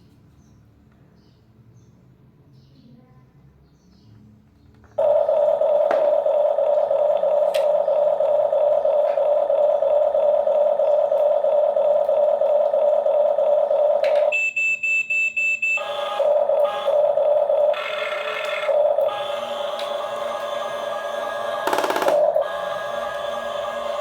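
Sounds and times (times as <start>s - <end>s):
uneven whirring: 5.0s - 14.4s, 15.8s - 24.0s
remote-control toy whine: 5.0s - 14.5s, 15.6s - 24.0s
high beeps: 5.0s - 19.9s.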